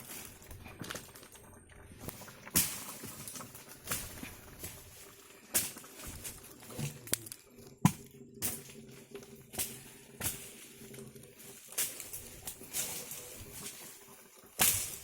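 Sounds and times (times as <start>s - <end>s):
sharp knocks and crunches: 7.8s - 8.8s.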